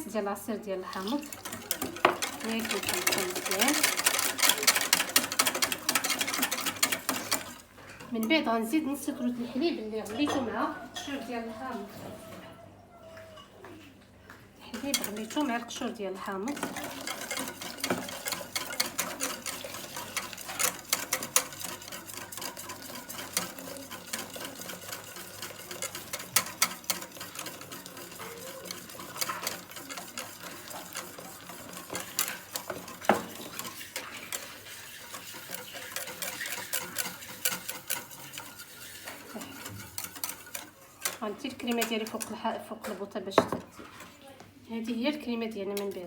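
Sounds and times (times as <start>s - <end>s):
utensil stirring liquid in bowl: 0.0s - 12.4s, 14.6s - 44.3s, 45.0s - 46.0s
utensil scraping bowl side: 0.9s - 7.6s, 14.7s - 44.2s.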